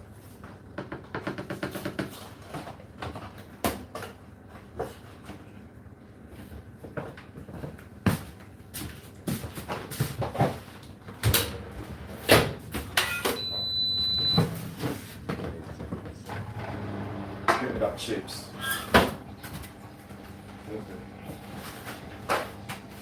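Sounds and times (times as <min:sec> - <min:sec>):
high electronic beep: 0:13.4 - 0:14.4.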